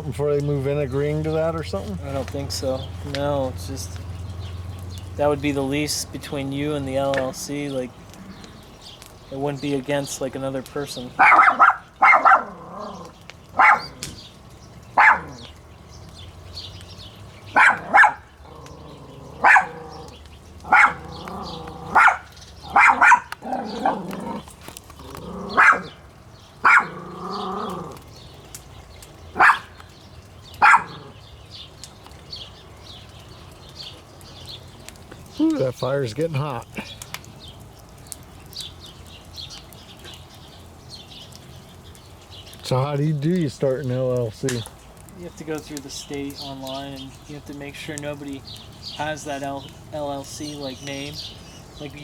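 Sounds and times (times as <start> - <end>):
dog barking: 11.2 - 13.0, 13.6 - 14.0, 14.9 - 15.5, 17.5 - 18.3, 19.4 - 20.0, 20.6 - 24.2, 25.4 - 26.0, 26.6 - 27.6, 29.4 - 29.8, 30.6 - 31.1.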